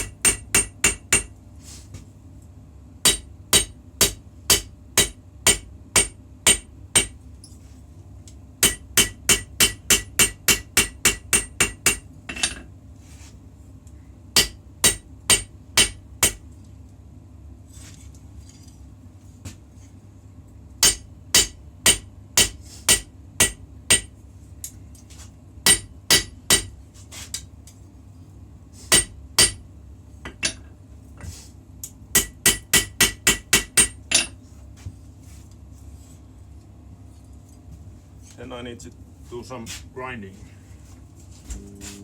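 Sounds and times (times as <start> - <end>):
hammer striking blade on anvil: 0.0 - 1.3, 3.0 - 7.2, 8.6 - 12.6, 14.4 - 16.4, 20.8 - 24.1, 25.7 - 26.7, 28.9 - 29.6, 32.2 - 34.4
steady low hum: 0.0 - 42.0.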